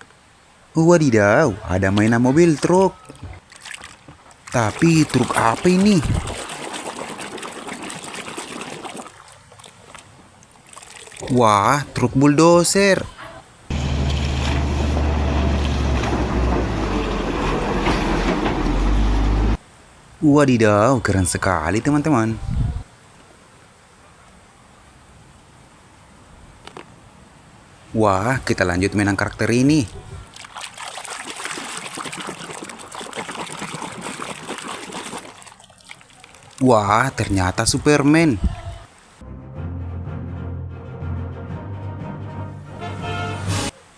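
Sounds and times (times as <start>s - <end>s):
water spraying: 3.6s - 10.0s, 28.2s - 39.2s
low motor hum: 13.7s - 19.6s.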